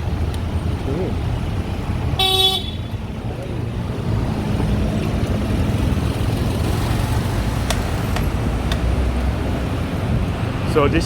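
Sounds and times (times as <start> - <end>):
street traffic rumble: 0.0 - 11.0
vehicle horn toot: 2.2 - 3.0.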